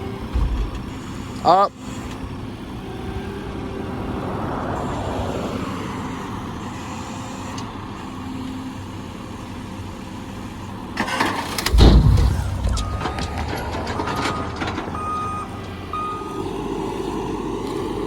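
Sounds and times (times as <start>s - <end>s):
truck engine running: 0.0s - 18.0s
heavy thud: 0.3s - 0.9s, 11.7s - 15.4s
cracking: 11.0s - 15.9s.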